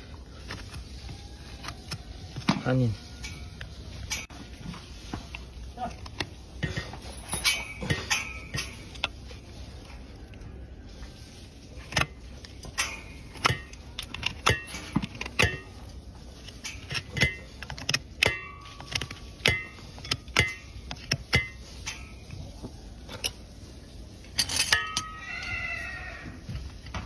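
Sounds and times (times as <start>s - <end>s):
metal tools clinking: 5.9s - 9.5s, 11.9s - 22.4s, 24.2s - 25.6s.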